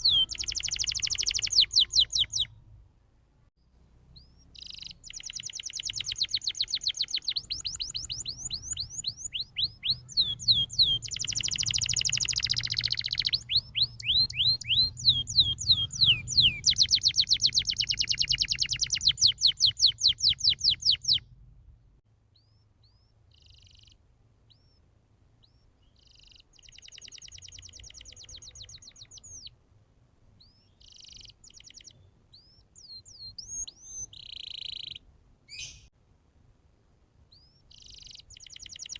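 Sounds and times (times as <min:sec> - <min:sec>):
canary singing trills: 0:00.0 - 0:02.6, 0:04.1 - 0:21.3, 0:22.3 - 0:24.8, 0:25.4 - 0:29.6, 0:30.4 - 0:35.9, 0:37.3 - 0:38.9
low hum: 0:21.2 - 0:22.0.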